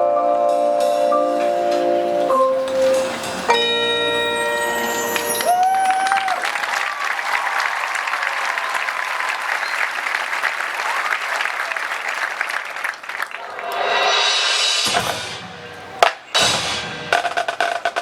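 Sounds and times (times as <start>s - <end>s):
crowd applauding and cheering: 2.6s - 14.3s
loud cheer: 4.7s - 14.3s.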